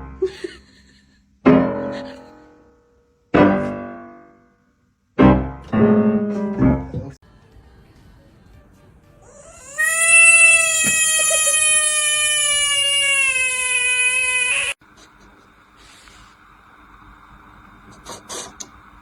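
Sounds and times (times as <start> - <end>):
piano chords and runs: 1.4 - 2.3, 3.3 - 4.4, 5.2 - 7.2.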